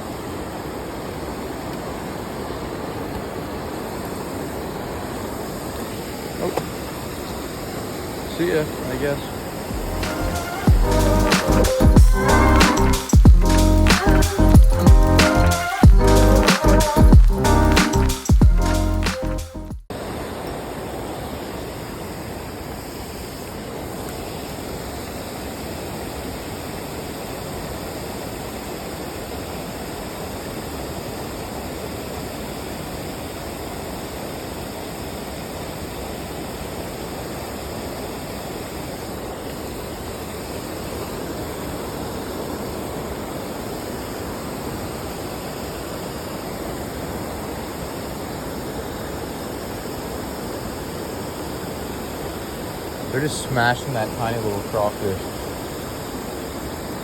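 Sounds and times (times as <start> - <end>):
creek water running: 0.6 - 18.7, 46.3 - 57.0.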